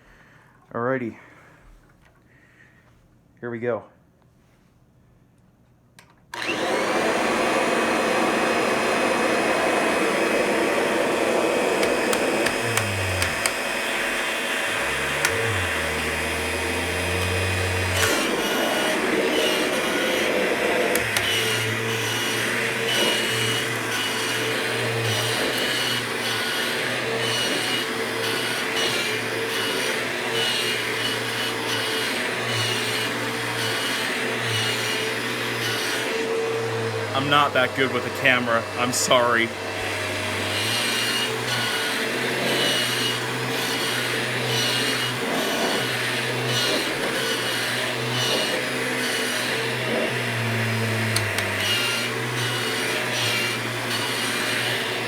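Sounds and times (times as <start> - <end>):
click: 6.0 - 6.3
vacuum cleaner motor whining: 6.3 - 55.0.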